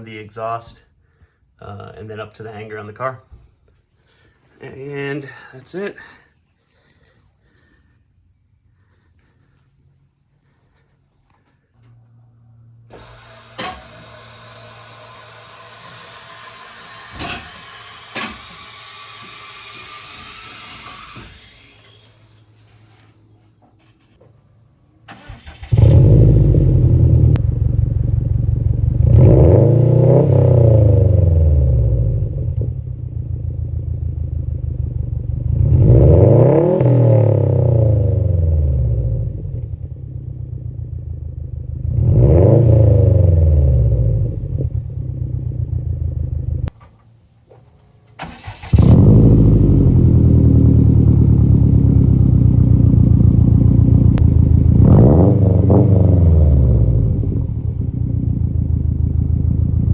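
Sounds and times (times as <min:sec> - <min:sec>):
car engine starting and idling: 0:10.4 - 0:24.2, 0:24.9 - 0:59.9
car engine revving: 0:12.8 - 0:22.8, 0:25.1 - 0:32.9, 0:35.4 - 0:39.7, 0:41.6 - 0:46.7, 0:48.2 - 0:59.9.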